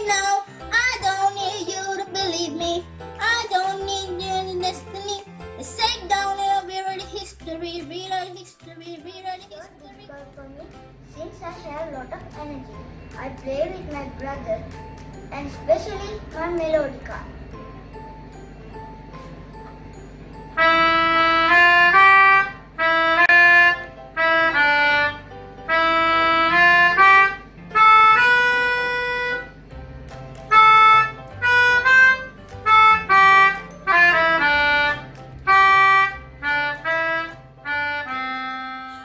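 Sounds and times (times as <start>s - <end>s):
faint low accompaniment: 8.8s - 39.0s
melodica playing a tune: 14.5s - 39.0s.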